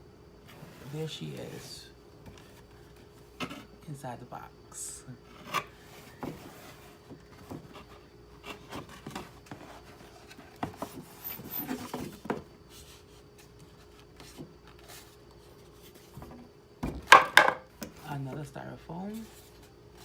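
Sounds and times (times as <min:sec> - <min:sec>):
faint steady hum: 0:00.0 - 0:20.0
cardboard and styrofoam rubbing: 0:05.3 - 0:16.3.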